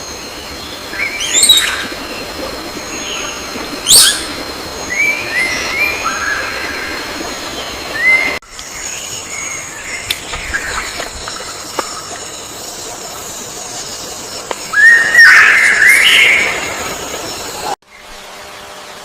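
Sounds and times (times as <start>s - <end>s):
steady hiss: 0.0s - 17.8s
birds chirping: 0.0s - 18.2s
bird warbling call: 0.9s - 7.2s, 14.6s - 17.8s.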